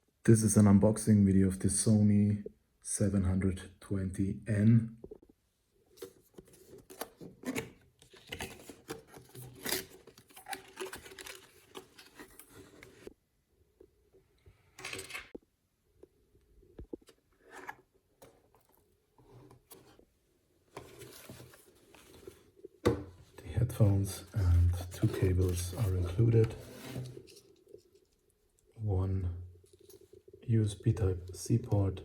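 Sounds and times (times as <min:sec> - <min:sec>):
packaging rustling: 0:06.0 - 0:13.1.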